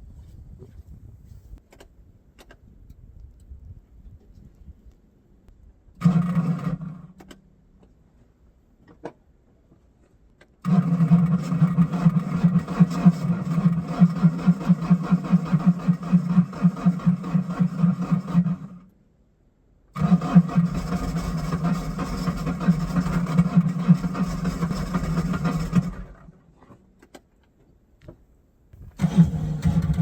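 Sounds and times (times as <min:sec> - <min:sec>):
engine starter cranking: 0:06.0 - 0:07.4, 0:10.6 - 0:18.8, 0:20.0 - 0:26.4, 0:28.8 - 0:30.0.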